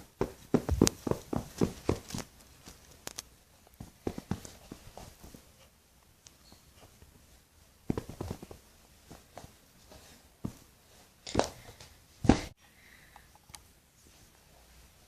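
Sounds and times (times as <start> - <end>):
hands handling dolls: 0.0 - 12.5.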